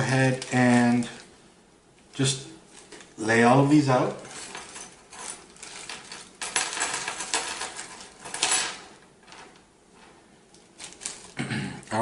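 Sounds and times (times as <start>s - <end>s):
metal parts rustling and clinking: 4.2s - 10.2s, 10.8s - 11.4s.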